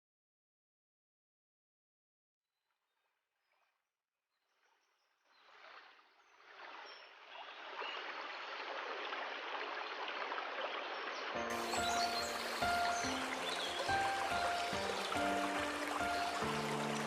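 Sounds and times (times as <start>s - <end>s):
music: 11.4s - 17.0s
waterfall rushing: 11.4s - 17.0s.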